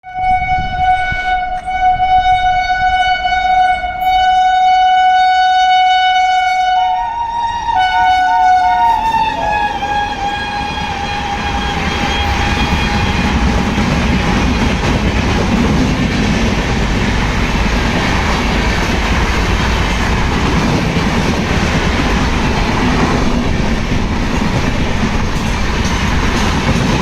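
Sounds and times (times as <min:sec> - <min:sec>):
locomotive air horn blast: 0:00.0 - 0:13.6
train rumble: 0:00.0 - 0:27.0.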